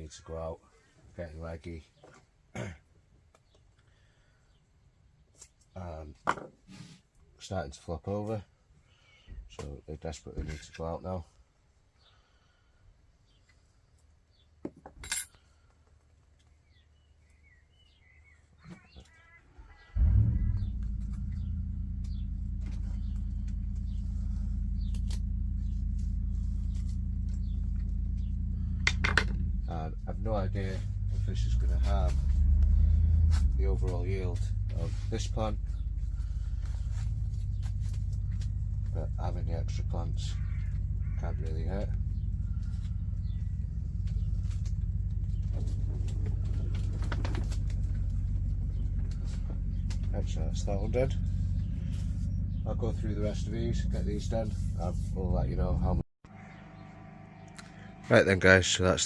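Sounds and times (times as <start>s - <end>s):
steady low hum: 20.0s - 59.0s
motor humming: 56.3s - 58.9s.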